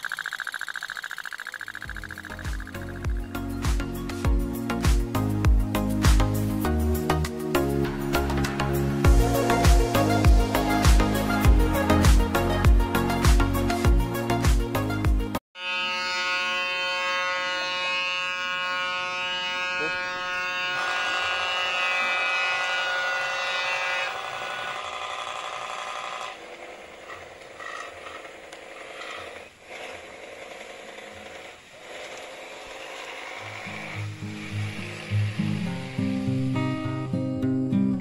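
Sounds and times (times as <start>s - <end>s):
toy steam boat putter: 0.0s - 3.3s, 20.8s - 35.6s.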